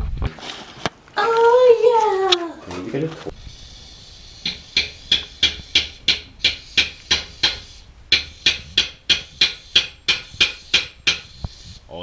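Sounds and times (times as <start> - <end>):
bright percussive knocks: 4.5 - 11.3.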